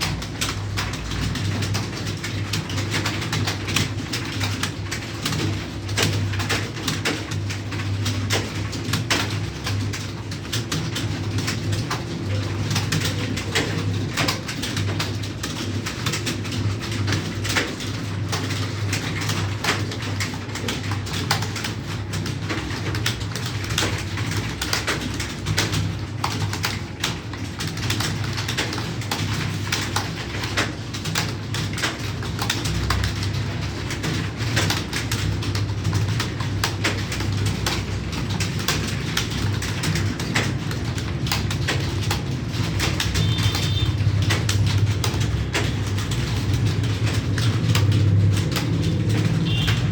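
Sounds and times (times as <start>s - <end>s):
computer keyboards clattering: 0.0s - 49.9s.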